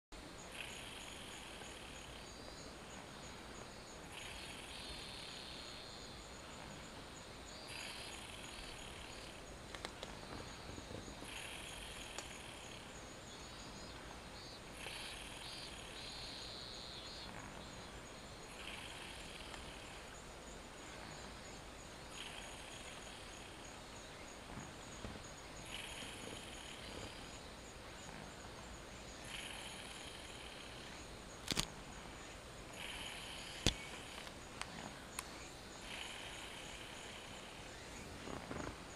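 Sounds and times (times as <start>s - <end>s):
faint high-pitched whine: 0.2s - 38.9s
cat snoring softly: 0.5s - 2.3s, 4.0s - 6.9s, 7.6s - 9.5s, 10.2s - 13.1s, 13.7s - 20.2s, 20.8s - 23.7s, 24.4s - 28.6s, 29.2s - 31.0s, 32.7s - 35.1s, 35.8s - 38.9s.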